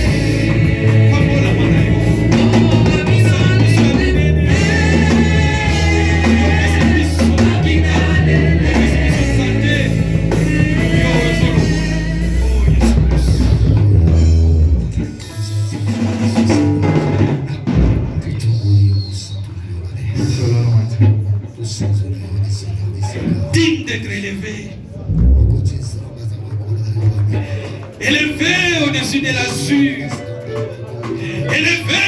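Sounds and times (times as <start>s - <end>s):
person singing: 0.0s - 14.0s, 27.4s - 32.0s
drum kit: 0.0s - 18.6s, 27.0s - 32.0s
bass line: 0.0s - 18.7s, 24.8s - 27.4s.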